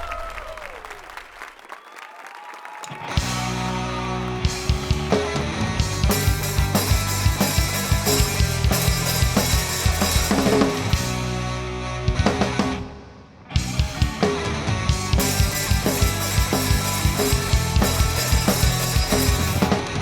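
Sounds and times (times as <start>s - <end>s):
guitars and bass: 3.0s - 20.0s
drum kit beating: 3.2s - 11.4s, 13.6s - 20.0s.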